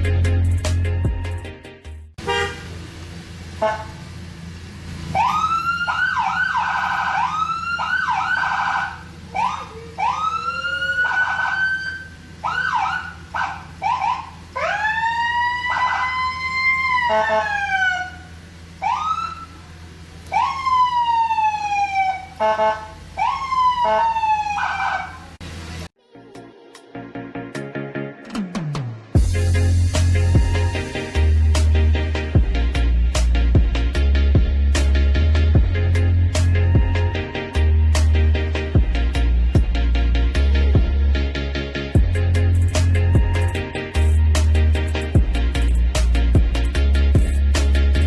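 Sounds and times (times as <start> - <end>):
buzzing horn blasts: 2.2 - 2.8, 3.5 - 4.1, 17.0 - 18.3, 22.3 - 23.0
electronic vehicle siren: 5.1 - 19.7, 20.3 - 25.4, 43.0 - 44.4.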